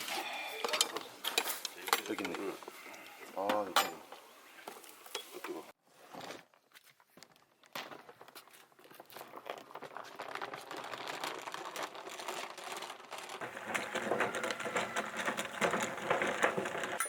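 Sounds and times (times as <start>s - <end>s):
dense rapid crackling: 9.3s - 17.0s.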